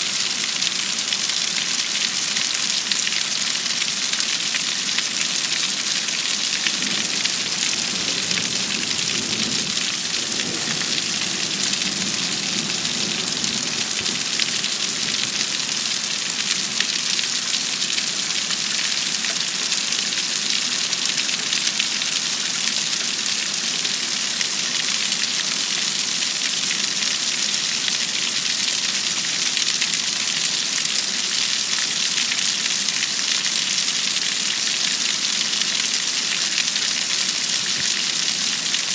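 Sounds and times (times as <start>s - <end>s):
heavy rain: 0.0s - 38.9s
low thunder rumble: 6.2s - 15.9s.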